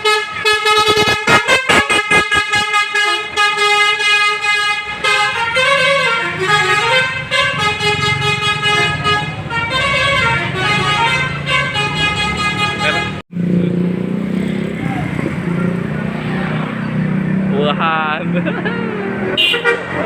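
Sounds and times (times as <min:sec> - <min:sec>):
bus air horn playing a tune: 0:00.0 - 0:13.2, 0:18.4 - 0:20.0.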